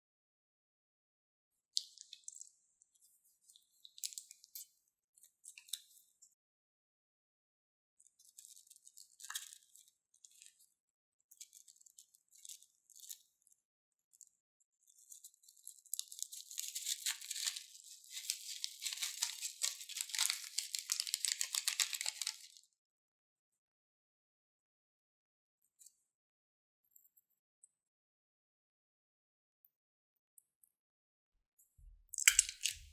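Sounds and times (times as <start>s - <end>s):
slime crackling and popping: 16.4s - 22.6s, 32.2s - 32.9s.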